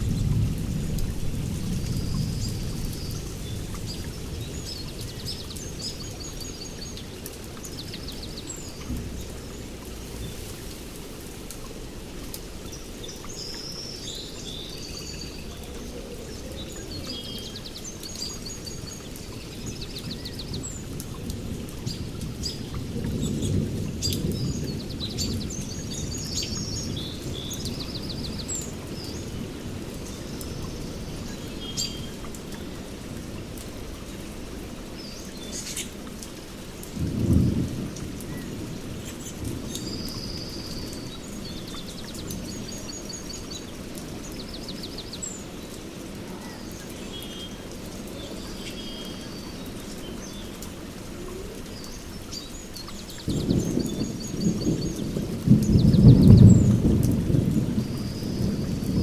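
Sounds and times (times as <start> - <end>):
steady rain: 0.0 - 59.0
birds calling and trilling: 34.9 - 36.2
rolling thunder: 36.9 - 41.1, 53.2 - 59.0.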